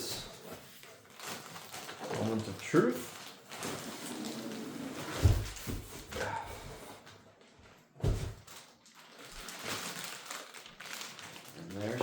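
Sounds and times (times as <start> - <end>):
cardboard rustling and scraping: 3.5 - 7.0.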